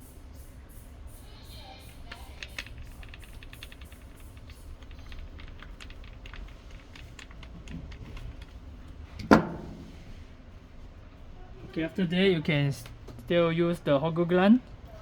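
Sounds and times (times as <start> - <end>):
screwdriver clicking and ticking: 1.9 - 8.4
loud knock: 9.3 - 9.9.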